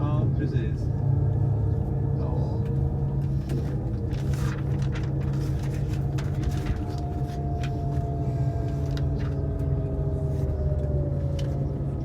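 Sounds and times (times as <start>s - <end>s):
vehicle interior rumble: 0.0s - 12.0s.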